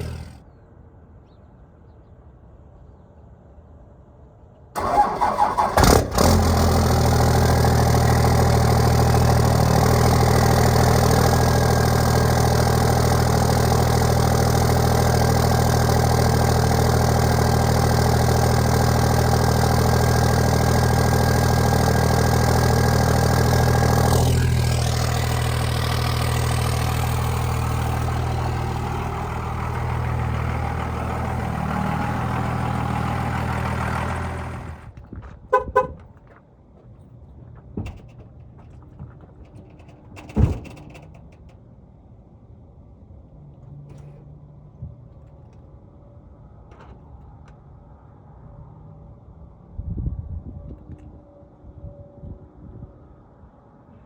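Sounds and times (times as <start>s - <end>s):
diesel engine starting and idling: 0.0s - 0.4s, 4.8s - 36.1s.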